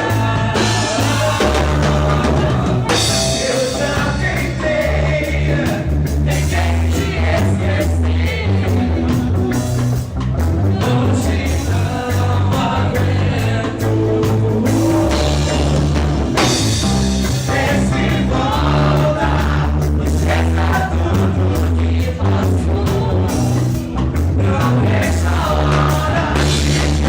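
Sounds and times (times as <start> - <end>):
person singing: 0.0 - 9.7
bass guitar: 0.0 - 27.0
drums: 0.0 - 27.0
guitar: 0.0 - 27.0.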